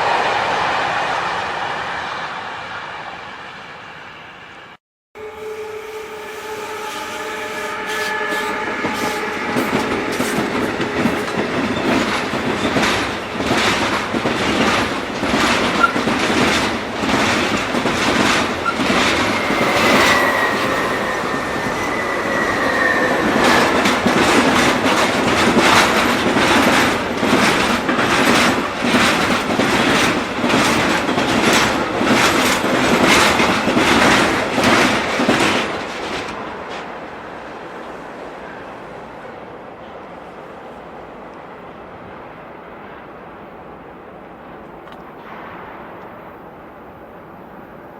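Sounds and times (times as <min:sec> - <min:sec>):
train horn chord: 0:05.2 - 0:11.1, 0:19.0 - 0:24.3
train wheels clattering over joints: 0:08.8 - 0:36.9
high wheel squeal: 0:18.5 - 0:24.8.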